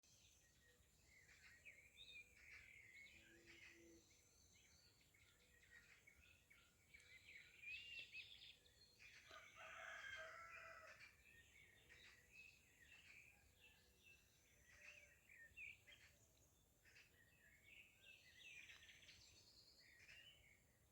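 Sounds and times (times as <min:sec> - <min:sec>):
small birds chirping: 0:00.0 - 0:20.9
rooster crowing: 0:09.3 - 0:11.0.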